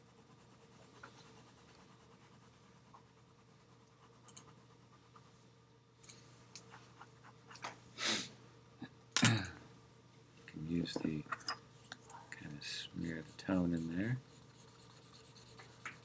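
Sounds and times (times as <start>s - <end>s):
pencil scratching on paper: 0.0s - 5.2s, 12.7s - 16.0s
steady low hum: 0.0s - 16.0s.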